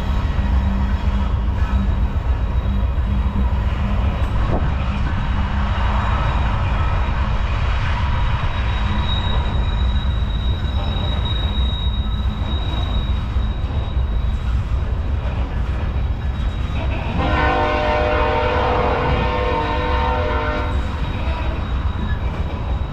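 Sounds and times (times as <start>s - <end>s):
freight train rumbling past: 0.0s - 22.9s
high wheel squeal: 5.8s - 22.9s
locomotive air horn: 17.1s - 20.9s.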